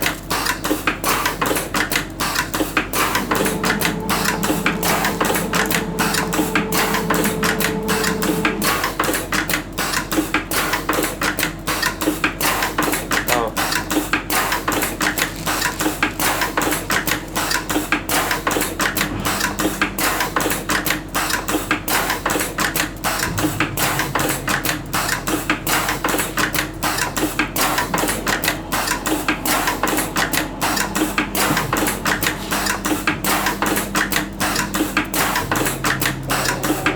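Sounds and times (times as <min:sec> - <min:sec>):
machine hum: 0:01.4 - 0:10.6, 0:18.1 - 0:36.9
wrapping machine clicking and clattering: 0:13.3 - 0:19.4.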